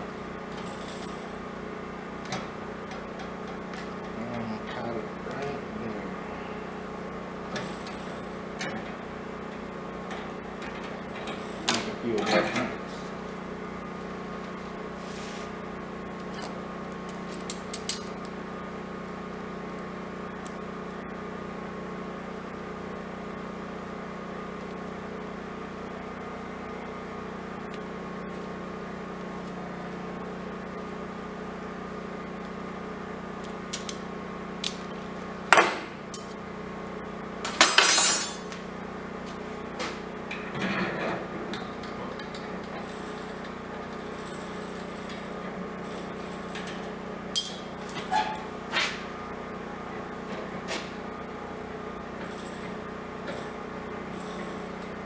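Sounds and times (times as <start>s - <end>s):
steady low hum: 0.0s - 21.8s.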